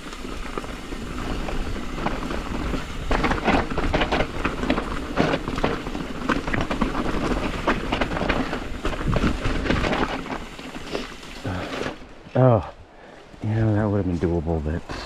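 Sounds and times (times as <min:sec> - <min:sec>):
bike rattling clicks and knocks: 0:00.0 - 0:12.0
bike tyres rolling over dirt: 0:00.0 - 0:15.0.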